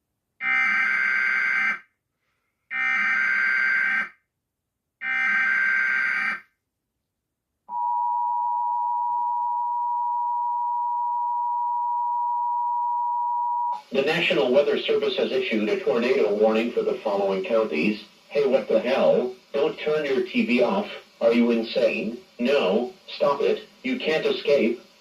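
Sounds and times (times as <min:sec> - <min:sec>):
two-tone attention signal: 0:07.7 - 0:13.8.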